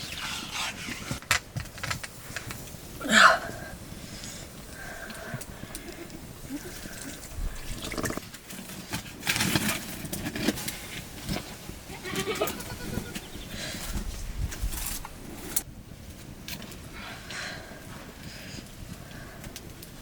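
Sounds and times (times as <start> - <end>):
goats bleating: 11.9 - 13.3.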